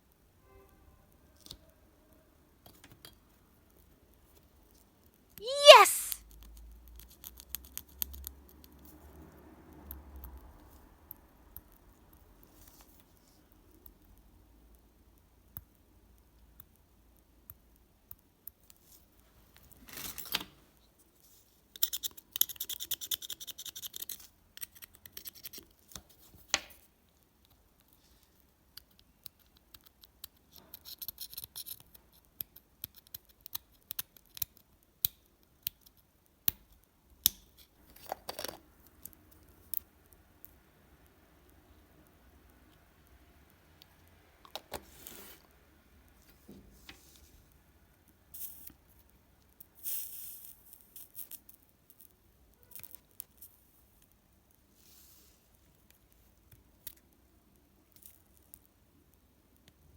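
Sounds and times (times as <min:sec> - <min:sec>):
sharp clicks and snips: 0:28.7 - 0:37.7
scratching or scraping: 0:44.8 - 0:45.5.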